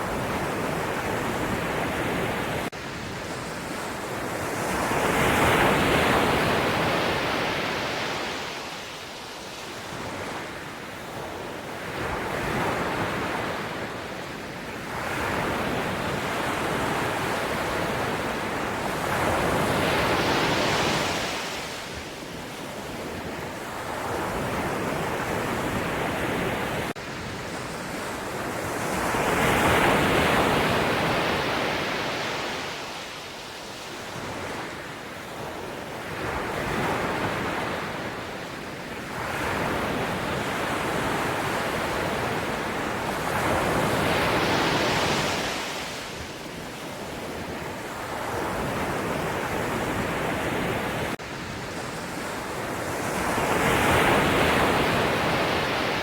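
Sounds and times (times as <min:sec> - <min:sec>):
sea waves breaking ashore: 0:14.9 - 0:56.0.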